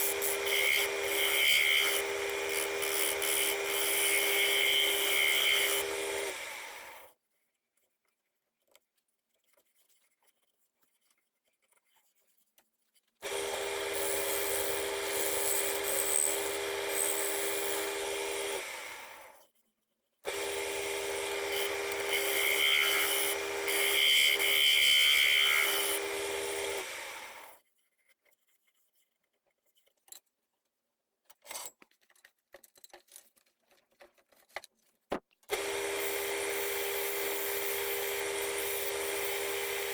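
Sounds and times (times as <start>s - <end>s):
wood lathe motor hum: 0.0s - 7.1s, 13.2s - 19.4s, 20.3s - 27.6s, 35.5s - 39.9s
tool scraping wood: 20.3s - 27.2s.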